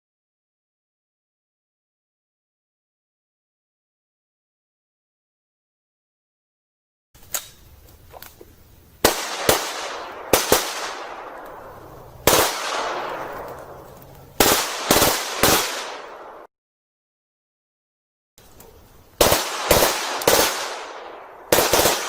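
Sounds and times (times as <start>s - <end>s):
machine gun bursts with echo: 14.4s - 16.4s, 19.2s - 22.0s.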